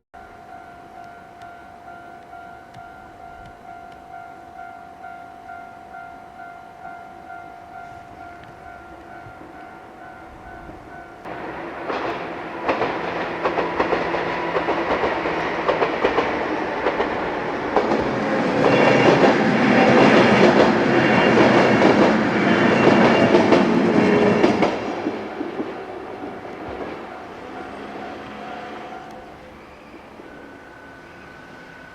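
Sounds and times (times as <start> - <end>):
electric train passing: 0.2 - 31.9
wheels clacking over rail joints: 11.2 - 30.8.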